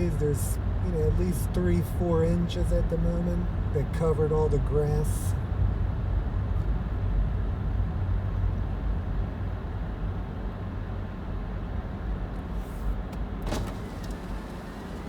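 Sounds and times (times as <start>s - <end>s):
car driving on snow from inside: 10.2s - 15.0s.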